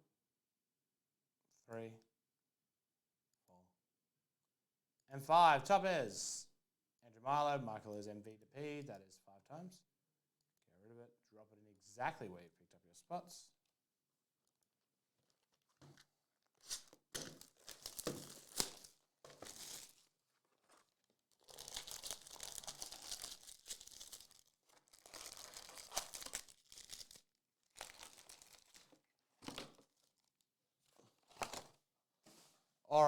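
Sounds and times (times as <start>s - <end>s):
card pack wrappers tearing: 16.6s - 20.1s, 20.7s - 29.9s.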